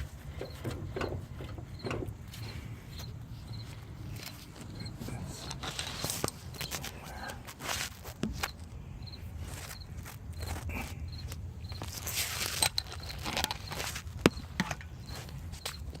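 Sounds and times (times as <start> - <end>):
low engine rumble: 0.0 - 16.0
drivetrain clicking: 0.2 - 2.5.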